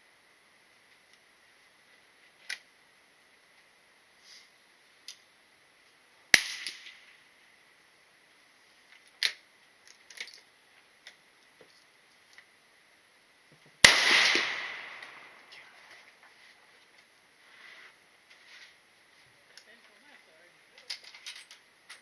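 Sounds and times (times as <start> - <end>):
faint gunshot: 6.3 - 7.1, 13.8 - 15.5
loud gunshots: 13.8 - 15.4.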